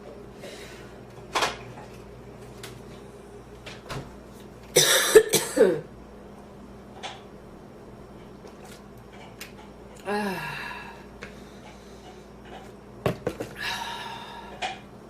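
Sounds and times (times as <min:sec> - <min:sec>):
woman exhaling: 0:10.0 - 0:11.1, 0:13.6 - 0:14.7.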